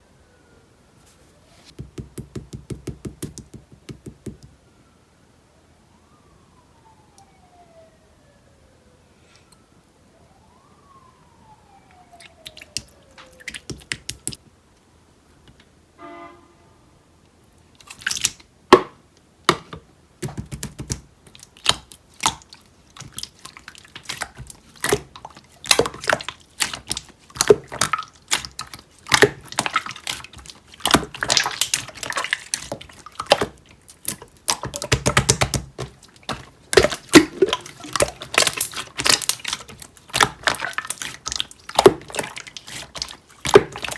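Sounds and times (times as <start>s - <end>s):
wet clicks and pops: 2.2s - 4.5s, 12.2s - 14.4s, 20.2s - 43.9s
slime squished by hand: 11.2s - 14.4s, 20.2s - 43.9s.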